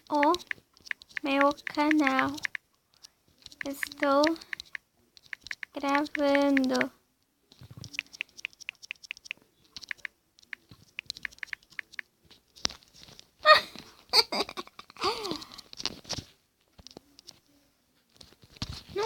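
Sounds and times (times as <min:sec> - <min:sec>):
keyboard typing clicks: 0:00.0 - 0:06.9, 0:07.8 - 0:12.1.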